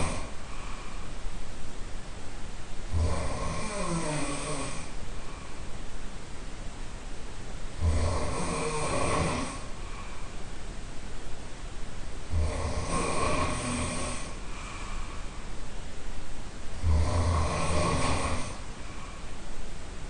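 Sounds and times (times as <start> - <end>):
person snoring: 0.0 - 0.9, 2.9 - 5.4, 7.8 - 10.1, 12.3 - 15.2, 16.8 - 19.2.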